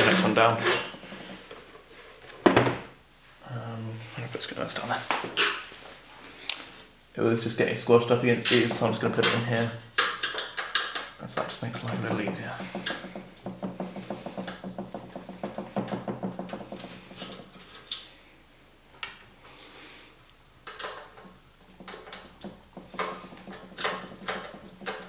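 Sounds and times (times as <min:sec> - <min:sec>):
metallic clicks and clatter: 0:20.6 - 0:25.0.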